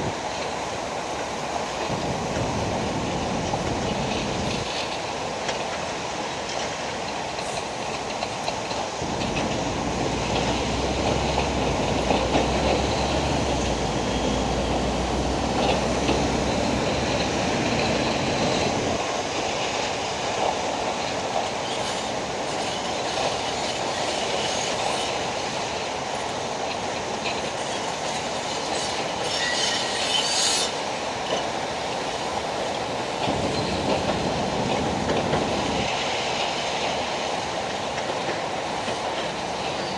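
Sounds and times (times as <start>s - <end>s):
engine rumble: 1.4s - 5.0s, 7.2s - 19.0s.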